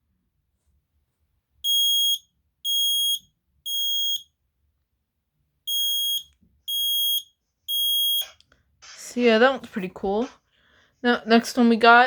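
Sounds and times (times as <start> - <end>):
smoke alarm beeps: 1.6 - 4.3, 5.7 - 8.3.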